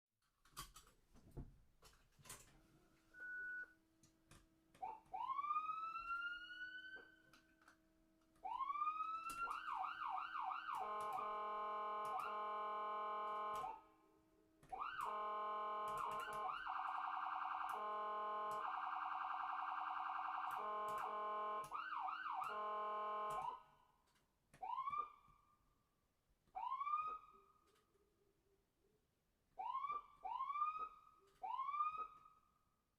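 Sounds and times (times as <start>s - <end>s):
electronic ambulance siren: 4.8s - 7.4s, 8.4s - 13.9s, 14.7s - 23.8s, 24.6s - 25.4s, 26.6s - 27.5s, 29.6s - 32.5s.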